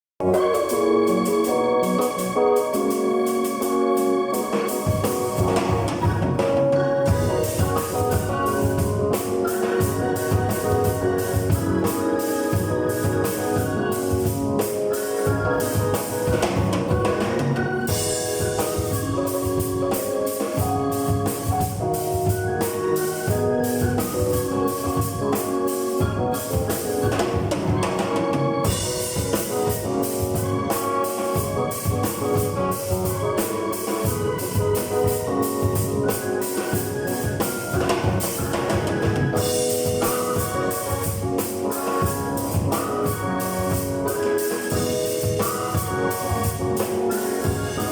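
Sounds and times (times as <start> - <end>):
drum kit beat: 0.2 - 47.9
keyboard chords: 0.2 - 47.9.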